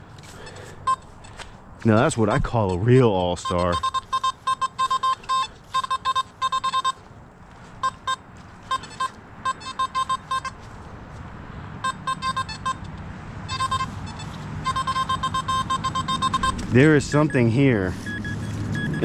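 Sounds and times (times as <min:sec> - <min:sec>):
metal detector short beeps: 0:00.4 - 0:01.4, 0:02.3 - 0:07.0, 0:07.8 - 0:10.6, 0:11.8 - 0:12.9, 0:13.5 - 0:19.0.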